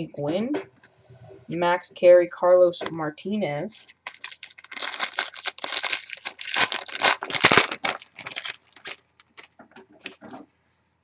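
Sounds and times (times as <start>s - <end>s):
foil wrapper tearing and crinkling: 3.9s - 10.1s.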